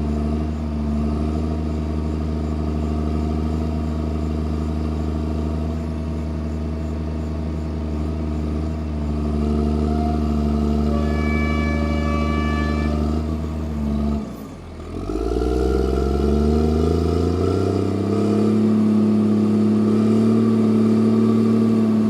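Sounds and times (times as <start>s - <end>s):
diesel engine running: 0.0s - 22.0s
high whine: 9.9s - 13.6s.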